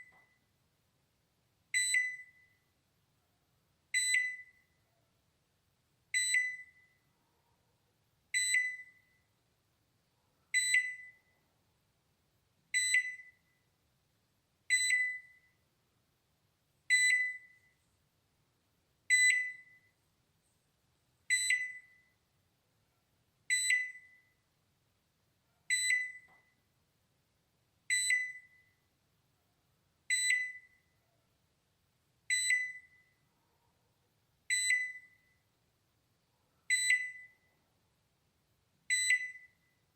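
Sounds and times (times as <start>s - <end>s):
microwave alarm ding: 1.8s - 2.5s, 8.4s - 9.0s, 14.7s - 15.4s, 19.1s - 19.8s, 21.3s - 22.0s, 34.5s - 35.2s, 36.7s - 37.3s, 38.9s - 39.6s.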